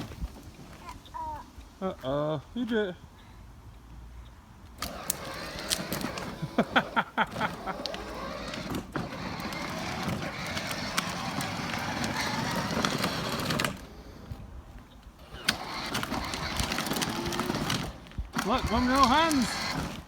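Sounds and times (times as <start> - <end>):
toy car motor rumbling: 4.8 - 14.5, 15.1 - 20.0.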